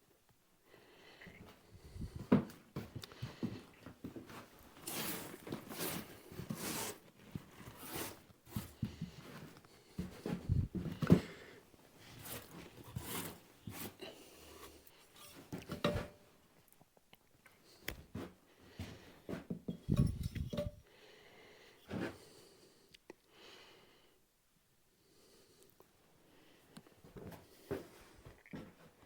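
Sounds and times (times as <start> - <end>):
knocks and scrapes: 12.1 - 14.0, 14.6 - 16.2, 19.4 - 20.8.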